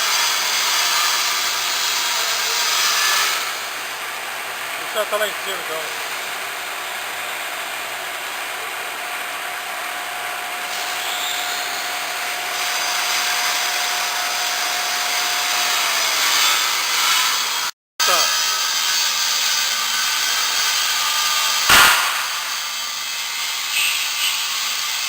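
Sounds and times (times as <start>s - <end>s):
stone-cutting saw hissing: 0.0s - 4.0s, 15.4s - 25.0s.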